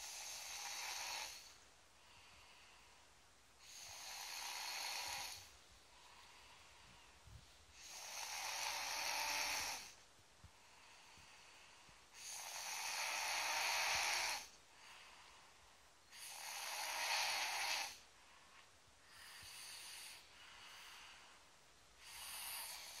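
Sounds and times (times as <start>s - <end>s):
girl snoring loudly: 0.0s - 1.6s, 3.6s - 5.5s, 7.8s - 10.0s, 12.1s - 14.6s, 16.1s - 18.0s, 22.0s - 23.0s.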